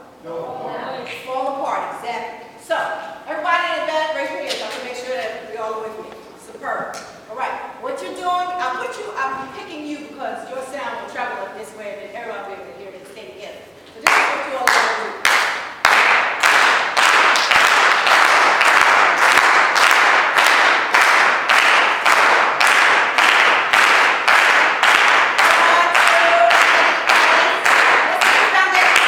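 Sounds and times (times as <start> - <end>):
crowd clapping in unison: 14.0 - 29.0.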